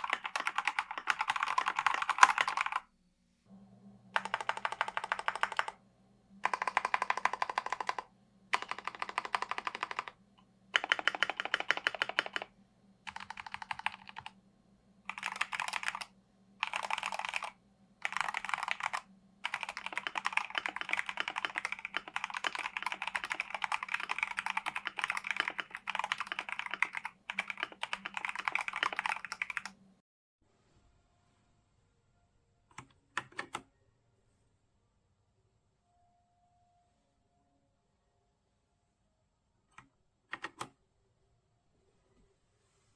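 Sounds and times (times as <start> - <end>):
typing on mechanical keyboard: 0.0 - 2.9, 4.2 - 5.8, 6.4 - 10.2, 10.8 - 12.5, 13.1 - 14.4, 15.1 - 29.8, 32.7 - 33.6, 39.7 - 40.7.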